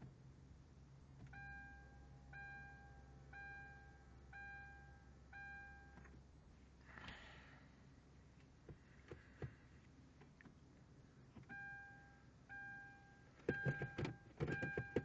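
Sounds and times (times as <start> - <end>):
faint low hum: 0.0 - 15.0
car warning chime beeping: 1.3 - 6.1, 11.4 - 15.0.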